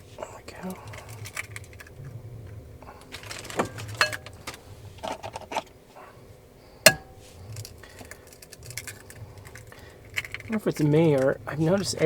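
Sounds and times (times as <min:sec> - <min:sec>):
sharp ringing clink: 0:06.9 - 0:07.2.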